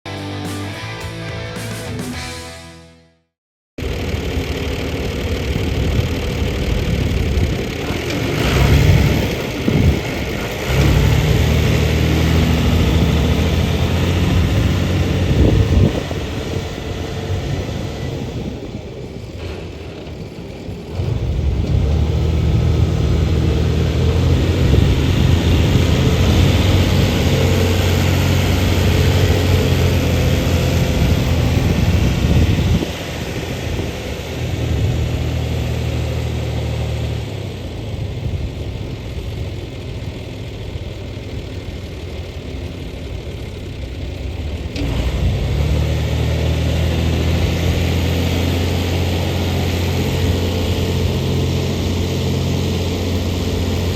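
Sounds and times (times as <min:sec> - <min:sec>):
tractor diesel engine idling: 0:03.8 - 0:44.8.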